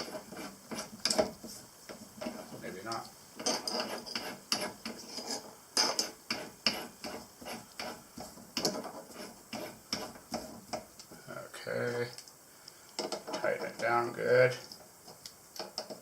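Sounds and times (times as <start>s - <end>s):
vise screw clicks and knocks: 8.6s - 8.9s, 13.0s - 13.8s, 15.2s - 16.0s.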